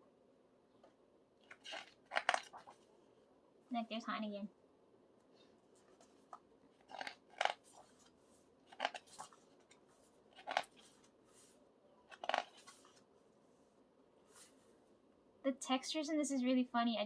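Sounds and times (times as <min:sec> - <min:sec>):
pages turning: 0:01.4 - 0:02.9, 0:05.4 - 0:13.1, 0:14.2 - 0:14.8.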